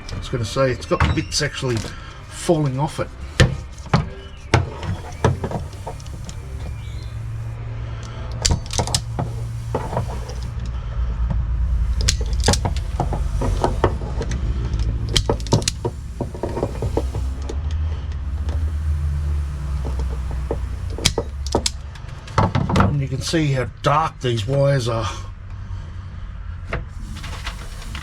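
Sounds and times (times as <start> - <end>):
hand tools clicking and snipping: 4.7 - 7.5, 8.3 - 10.6, 11.7 - 14.0, 14.8 - 17.5, 18.3 - 21.8
steady low rumble: 4.9 - 22.0.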